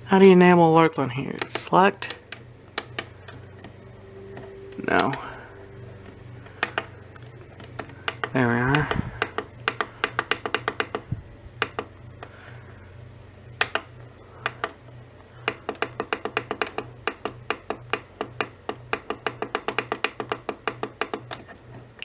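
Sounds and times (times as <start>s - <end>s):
faint low pulsing hum: 0.0s - 22.0s
radio buttons clicking: 1.4s - 5.2s, 6.0s - 12.3s, 13.6s - 14.8s.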